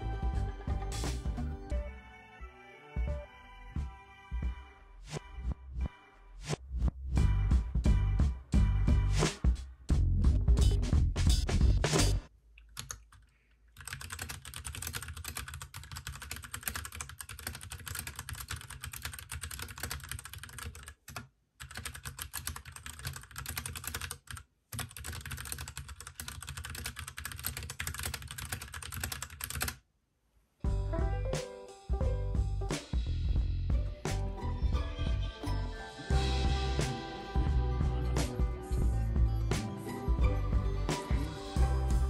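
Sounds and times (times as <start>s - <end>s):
music with heavy beat: 0.0s - 1.5s, 6.5s - 12.2s, 36.0s - 42.0s
fast typing on mechanical keyboard: 12.8s - 29.8s.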